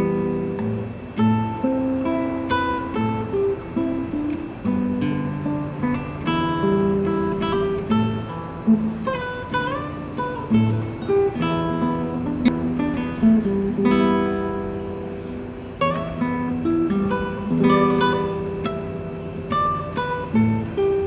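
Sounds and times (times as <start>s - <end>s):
acoustic guitar melody: 0.0s - 21.0s.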